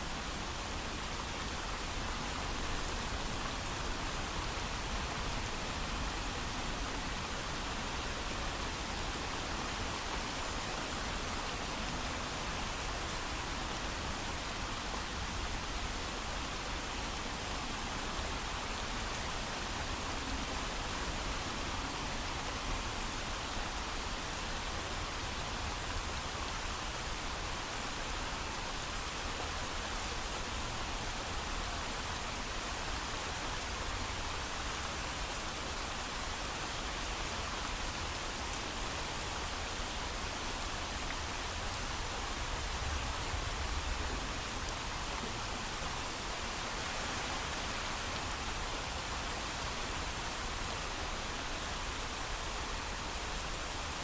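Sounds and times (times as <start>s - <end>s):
heavy rain falling: 29.7s - 54.0s.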